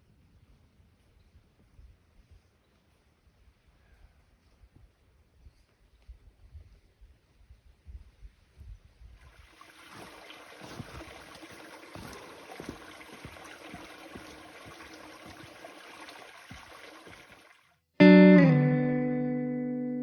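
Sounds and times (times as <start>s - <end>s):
stream trickling and gurgling: 9.1s - 17.8s
small water splashes: 9.2s - 17.8s.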